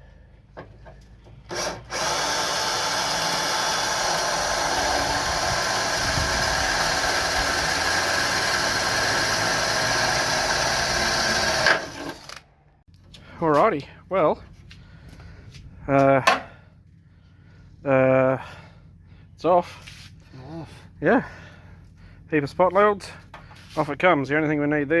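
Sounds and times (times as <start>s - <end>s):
electric drill drilling metal: 1.5s - 12.5s.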